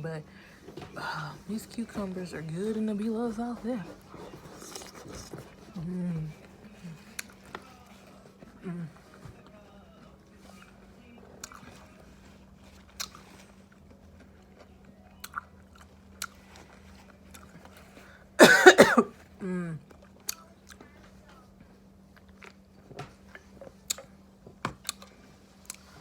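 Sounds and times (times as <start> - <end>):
chewing and biting food: 4.0 - 7.6, 11.4 - 12.0, 12.7 - 17.9, 22.1 - 26.0
cough or burp-like vocal burst: 18.4 - 19.1.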